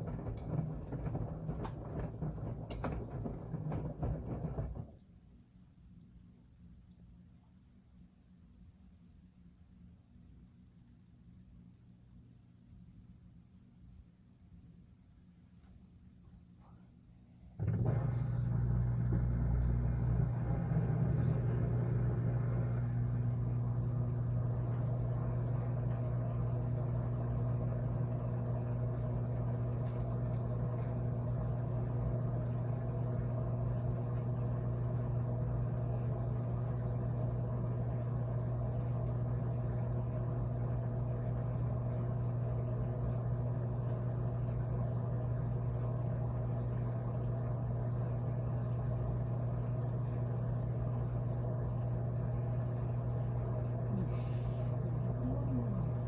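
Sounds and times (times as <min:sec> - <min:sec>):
washing machine motor hum: 0:00.0 - 0:05.0, 0:17.4 - 0:56.0.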